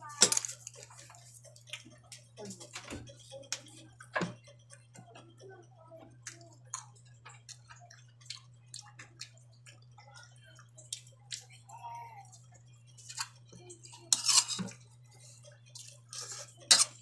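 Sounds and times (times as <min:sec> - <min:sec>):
steady low hum: 0:00.0 - 0:17.0
chewing food: 0:00.4 - 0:05.4, 0:06.0 - 0:14.0.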